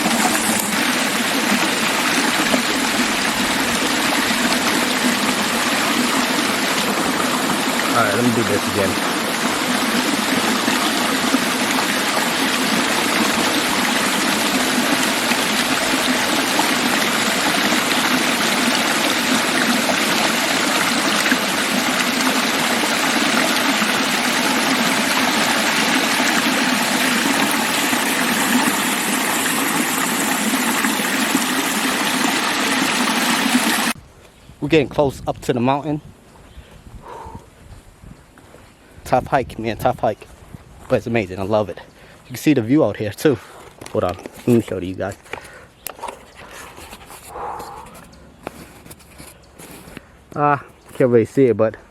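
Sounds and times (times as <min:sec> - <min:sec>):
waterfall rushing: 0:00.0 - 0:34.0.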